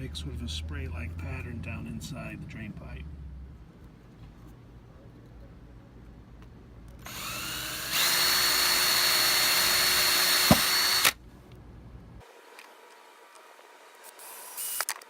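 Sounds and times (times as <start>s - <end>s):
electric drill whining: 7.0s - 11.2s.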